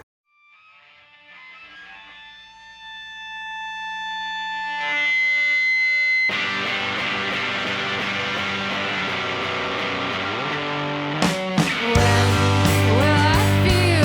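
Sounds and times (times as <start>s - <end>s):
distorted electric guitar chord: 6.3s - 14.0s
rock band playing: 6.3s - 14.0s.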